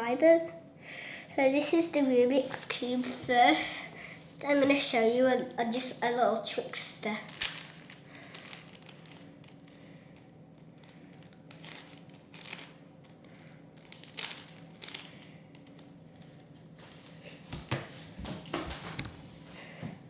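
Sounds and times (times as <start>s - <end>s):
puzzle cube plastic clicks: 6.5s - 16.5s.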